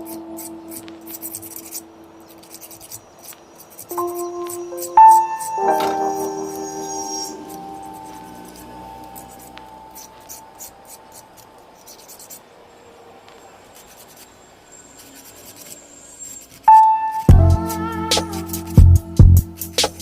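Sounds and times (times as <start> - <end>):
small ticks: 0.0 - 6.2, 7.4 - 12.5, 13.2 - 14.4
faint scratching and rubbing: 0.0 - 18.8.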